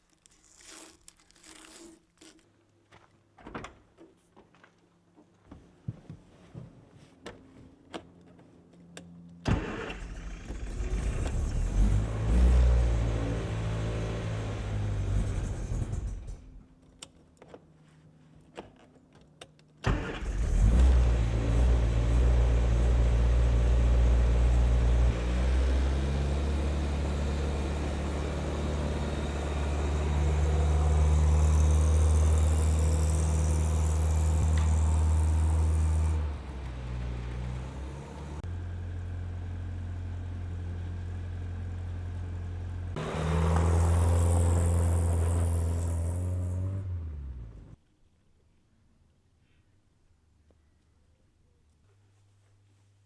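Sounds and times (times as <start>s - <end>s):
engine running: 9.4s - 16.6s, 19.9s - 47.8s.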